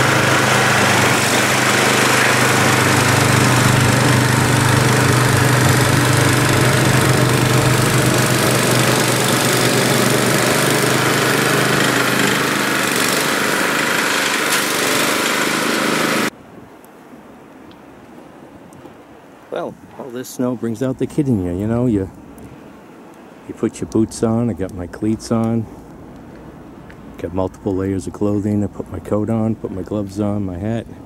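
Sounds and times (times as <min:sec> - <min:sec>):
snowblower engine running: 0:00.0 - 0:16.3.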